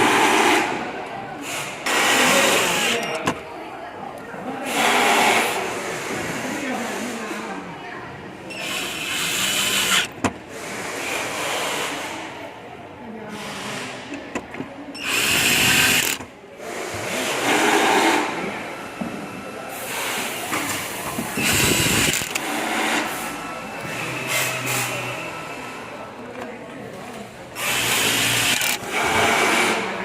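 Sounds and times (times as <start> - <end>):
electric screwdriver running: 8.6 - 10.2, 15.0 - 16.2, 21.4 - 22.4.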